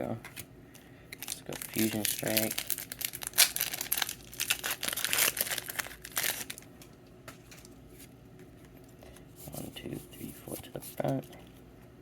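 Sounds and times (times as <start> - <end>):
foil wrapper crinkling and tearing: 1.2 - 6.7.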